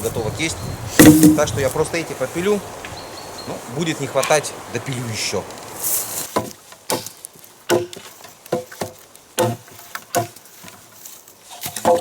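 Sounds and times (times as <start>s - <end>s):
firewood knocking and clattering: 1.0s - 1.8s, 6.3s - 12.0s.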